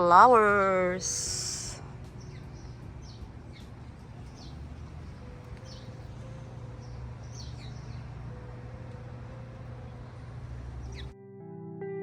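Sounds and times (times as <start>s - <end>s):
small bird chirping: 2.1s - 6.2s, 6.8s - 8.1s.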